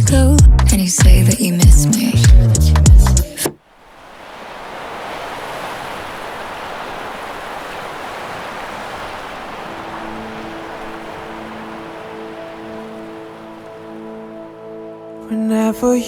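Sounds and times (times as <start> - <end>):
sea surf washing on beach: 3.6 - 15.5
faint sustained musical tones: 9.6 - 16.0.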